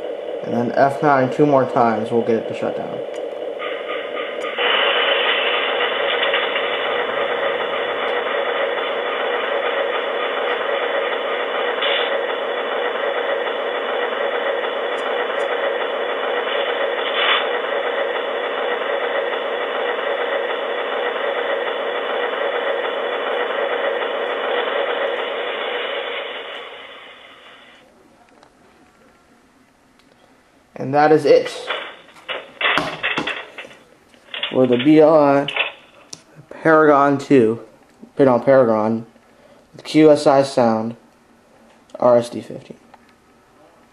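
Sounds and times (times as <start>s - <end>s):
model locomotive diesel engine idling: 0.0s - 27.9s.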